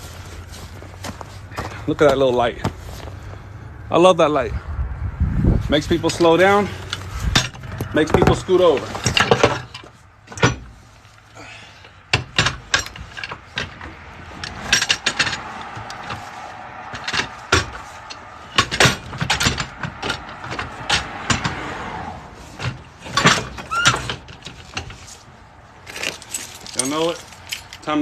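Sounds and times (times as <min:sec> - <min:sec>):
vehicle tyre noise passing: 0:00.0 - 0:28.0
tools clanking and knocking: 0:05.8 - 0:28.0.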